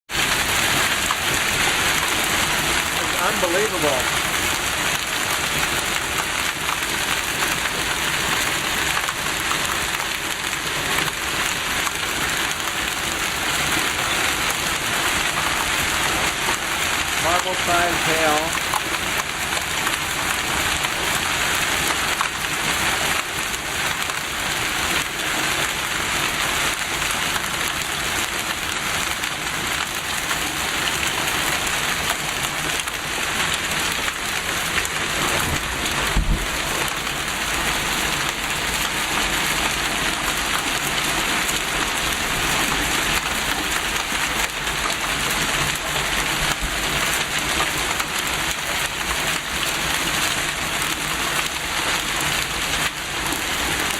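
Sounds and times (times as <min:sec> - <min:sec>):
hail pattering: 0:00.1 - 0:53.9
low thump: 0:36.1 - 0:36.5.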